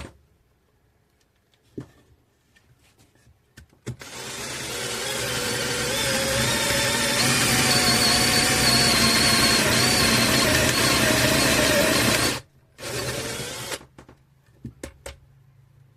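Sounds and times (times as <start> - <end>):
drill motor whining: 4.0 - 13.8
drill clicks: 4.0 - 13.9.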